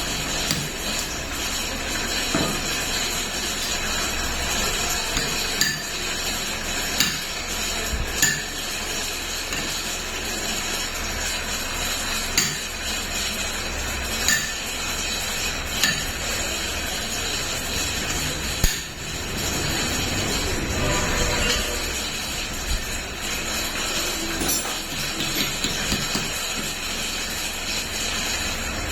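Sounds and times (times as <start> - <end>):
tools tapping metal parts: 0.4 - 1.2, 2.3 - 2.8, 5.1 - 6.0, 7.0 - 7.4, 8.2 - 8.6, 9.5 - 9.8, 12.4 - 12.8, 14.2 - 14.6, 15.8 - 20.5, 23.6 - 26.8.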